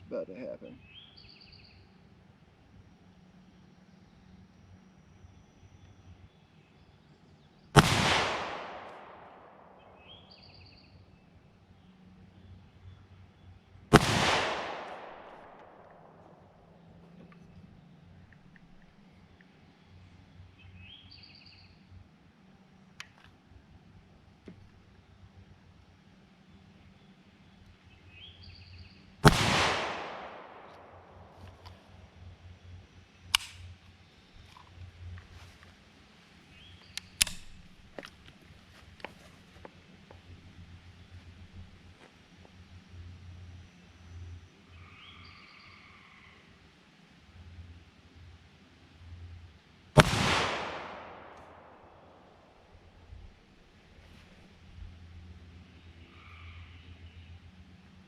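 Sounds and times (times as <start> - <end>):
rifle shot with echo: 7.8 - 10.4, 13.9 - 16.7, 29.2 - 31.6, 50.0 - 52.5.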